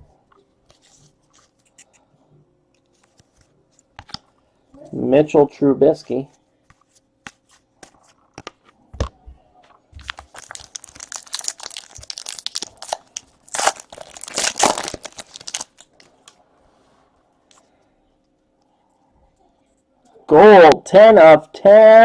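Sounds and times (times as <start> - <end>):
foil wrapper tearing and crinkling: 10.0 - 16.4.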